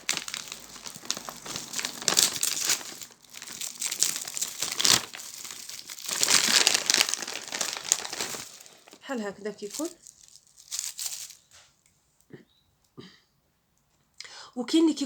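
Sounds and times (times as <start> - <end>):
plastic packaging tearing and crinkling: 0.0 - 11.6.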